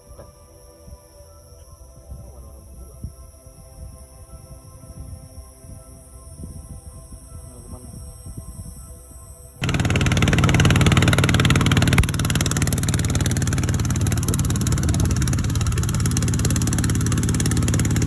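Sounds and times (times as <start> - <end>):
small engine running: 9.6 - 18.0.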